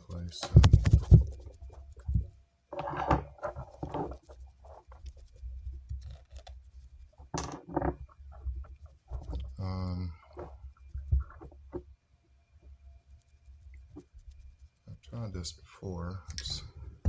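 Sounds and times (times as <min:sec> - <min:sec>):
small objects scraped and rustled: 0:00.3 - 0:11.9.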